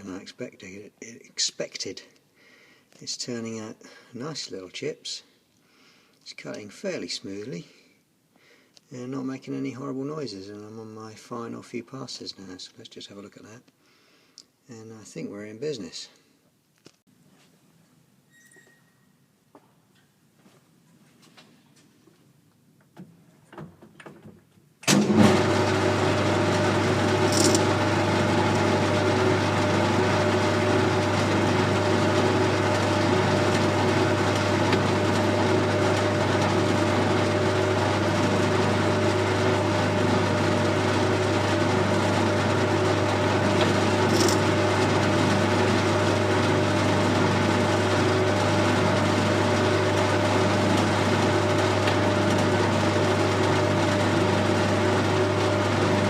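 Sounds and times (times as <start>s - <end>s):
metal lathe running: 25.0s - 56.0s.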